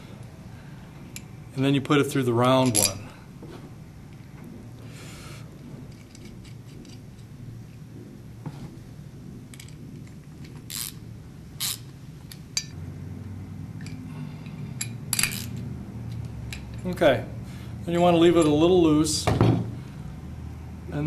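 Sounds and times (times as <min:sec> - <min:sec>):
metal hardware clinking: 0:02.6 - 0:03.2, 0:13.8 - 0:17.0.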